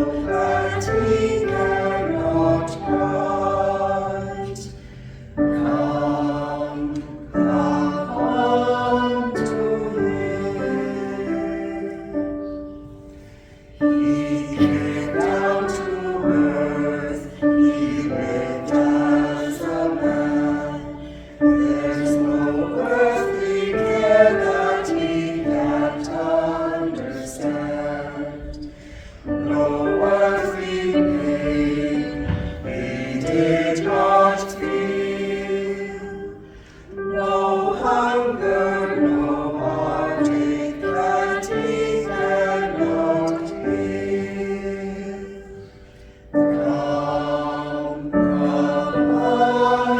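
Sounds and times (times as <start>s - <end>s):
choir singing a hymn: 0.0s - 49.9s
singers breathing: 4.4s - 5.5s, 12.7s - 13.9s, 21.0s - 21.6s, 28.4s - 29.4s, 36.4s - 37.2s, 45.6s - 46.4s.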